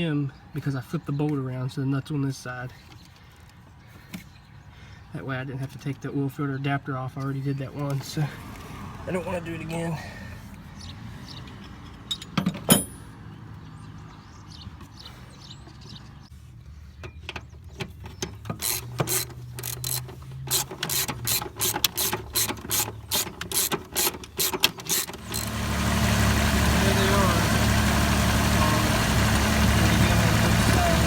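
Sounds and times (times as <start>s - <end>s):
socket ratchet clicking: 18.6s - 25.4s.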